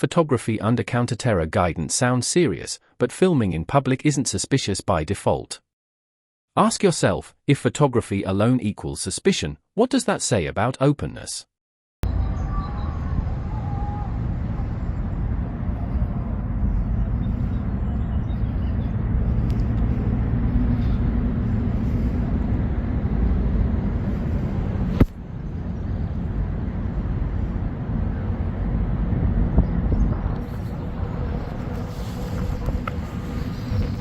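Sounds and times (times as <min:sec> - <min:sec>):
distant road traffic rumble: 0:12.0 - 0:34.0.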